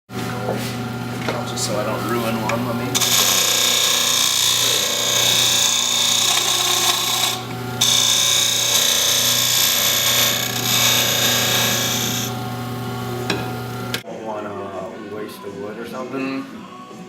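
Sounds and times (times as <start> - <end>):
hissing wood cutting noise: 0.7 - 14.0
router spindle humming: 0.8 - 14.0.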